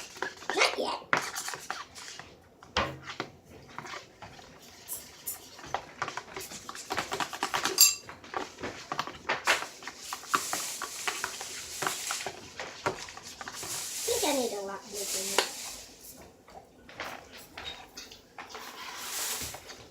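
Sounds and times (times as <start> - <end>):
spoon stirring glue in a bowl: 0.0 - 19.9
utensil clinking against bowl: 7.5 - 8.2.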